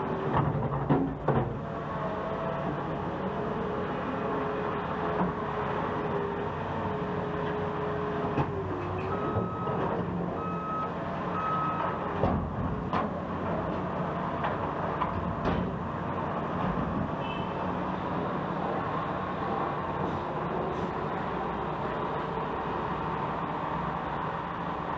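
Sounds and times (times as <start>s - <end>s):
heavy engines rumbling: 0.0s - 24.9s
vehicle backup alarm beeping: 9.1s - 9.8s, 10.4s - 11.9s.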